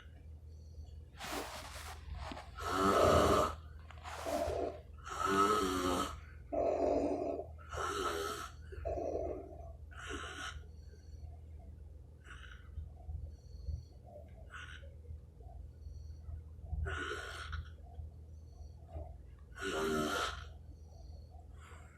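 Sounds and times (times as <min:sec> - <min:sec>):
man snoring heavily: 0:02.6 - 0:03.6, 0:04.2 - 0:08.5, 0:19.6 - 0:20.4.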